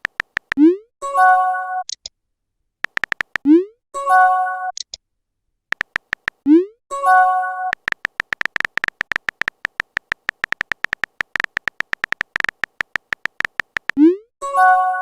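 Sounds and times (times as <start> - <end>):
phone keyboard typing clicks: 0.0 - 0.6, 2.8 - 3.5, 5.7 - 6.4, 7.7 - 14.0.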